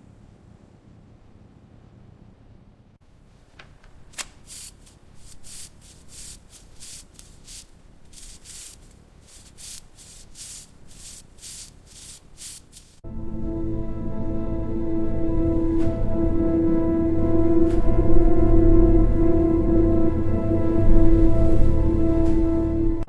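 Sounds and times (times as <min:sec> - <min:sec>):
sharp click: 0:03.6 - 0:04.9
hand rubbing against surface: 0:04.0 - 0:13.0
music: 0:13.0 - 0:23.0.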